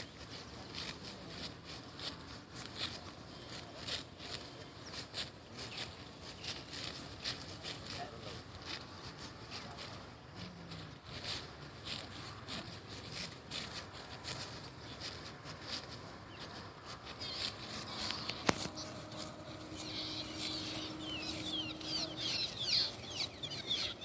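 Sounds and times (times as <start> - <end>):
rice stalks snapping and rustling: 10.7 - 22.9.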